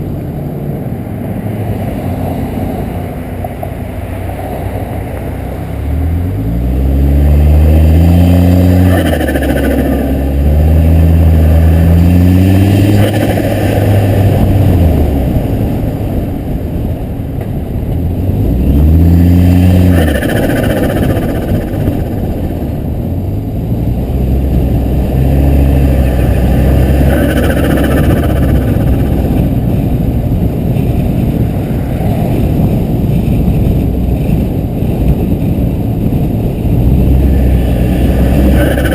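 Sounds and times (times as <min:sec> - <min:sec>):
car engine accelerating: 0:03.6 - 0:38.9
turbo flutter: 0:19.9 - 0:22.9, 0:25.7 - 0:30.0, 0:37.2 - 0:38.9.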